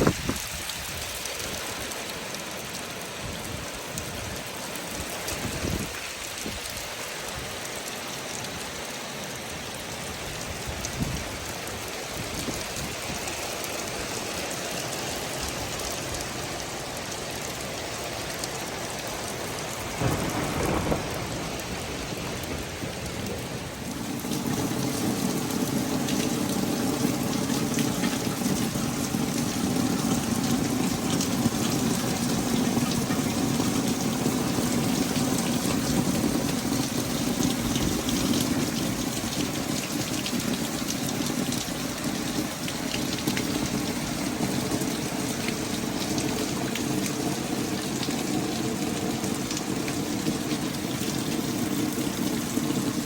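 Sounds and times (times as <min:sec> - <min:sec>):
rain splashing on hard surfaces: 0:00.0 - 0:53.0.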